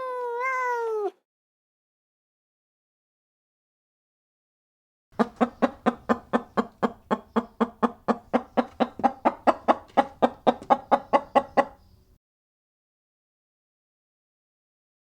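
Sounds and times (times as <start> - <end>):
animal clucking calls: 5.2 - 12.0.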